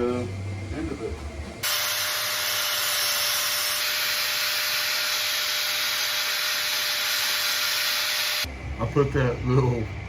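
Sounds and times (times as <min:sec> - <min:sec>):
power cutting tool grinding: 0:01.6 - 0:08.5.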